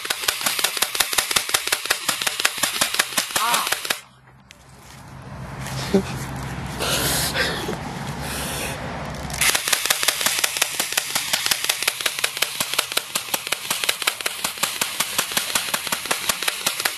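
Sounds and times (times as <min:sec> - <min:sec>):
airsoft gun firing full auto: 0:00.0 - 0:04.0, 0:09.4 - 0:16.9.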